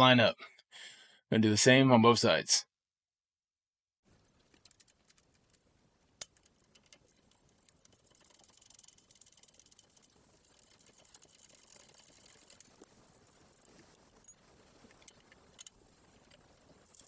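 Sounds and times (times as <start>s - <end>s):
metallic clicking of hand tools: 4.5s - 5.6s.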